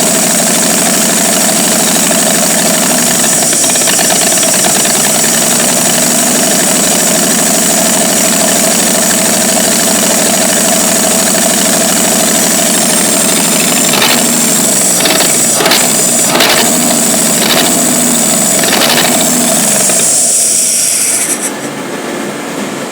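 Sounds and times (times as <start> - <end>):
truck engine idling: 0.0 - 22.9
sharp engine knocks: 2.2 - 6.7, 12.4 - 20.2.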